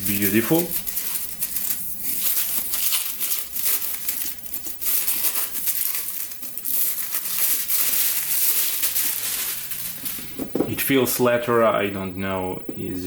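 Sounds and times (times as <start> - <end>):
bag crinkling and rustling: 0.0 - 10.7.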